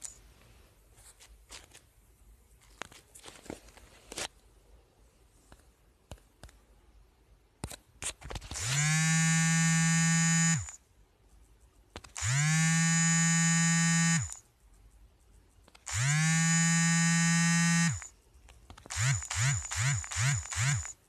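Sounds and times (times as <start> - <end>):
phone vibration buzzing: 8.6 - 10.8, 12.2 - 14.4, 15.9 - 18.1, 18.9 - 21.0.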